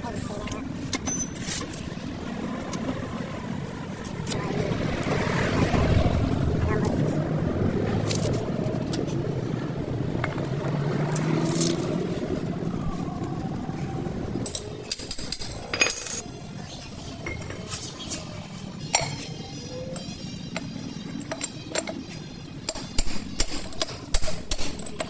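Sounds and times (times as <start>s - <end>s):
low rumble: 1.9s - 17.2s
metallic clinks and taps: 20.0s - 24.0s.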